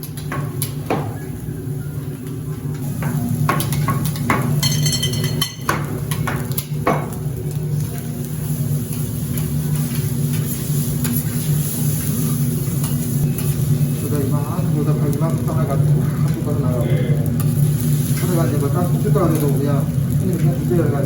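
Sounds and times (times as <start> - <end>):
food sizzling on a griddle: 2.8 - 21.0
metal spatulas knocking on plate: 3.5 - 7.1.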